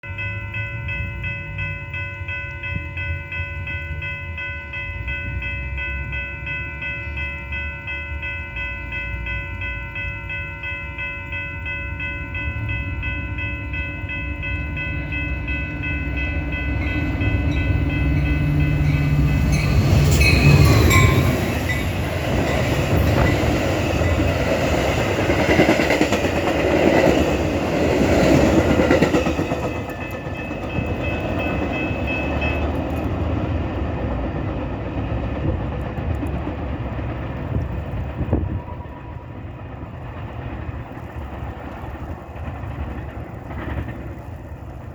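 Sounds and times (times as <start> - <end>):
diesel locomotive rumble: 0.2 - 44.9
train wheels clattering on rails: 11.2 - 44.9.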